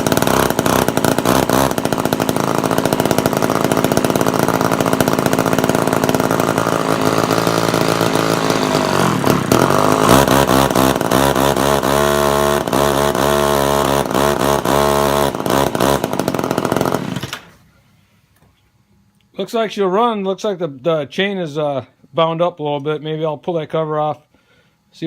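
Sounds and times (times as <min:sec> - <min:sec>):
chainsaw engine running: 0:00.0 - 0:17.6.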